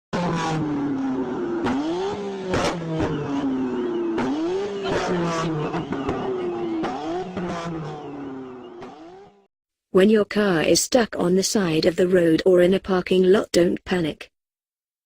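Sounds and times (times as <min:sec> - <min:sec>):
car engine revving: 0:00.2 - 0:09.5.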